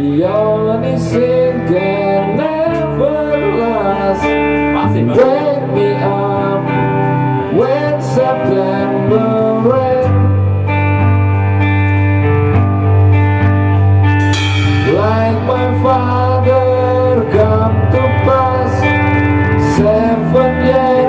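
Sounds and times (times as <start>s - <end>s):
person singing: 0.0s - 10.8s, 14.4s - 21.0s
guitar: 0.0s - 21.0s
low bass note: 11.0s - 20.1s.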